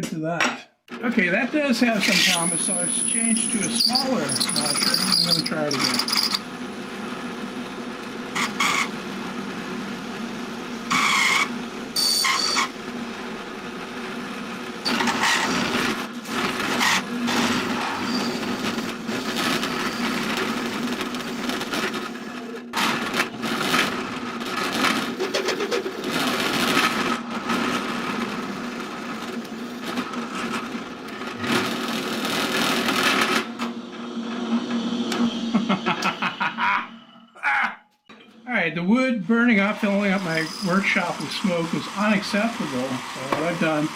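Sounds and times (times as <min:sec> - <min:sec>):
metal grinding on metal: 0:01.9 - 0:06.4
drill press motor hum: 0:02.0 - 0:36.8.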